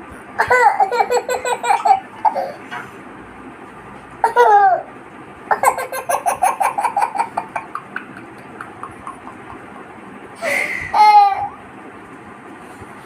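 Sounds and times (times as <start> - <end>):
baby laughing: 0.4 - 2.6, 4.2 - 4.9, 5.5 - 9.8, 10.4 - 11.6.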